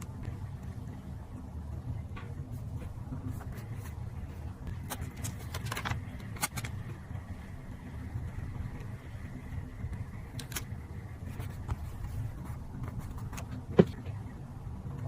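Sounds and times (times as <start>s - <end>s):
steady low hum: 0.0s - 15.0s
paper crinkling: 4.7s - 6.8s.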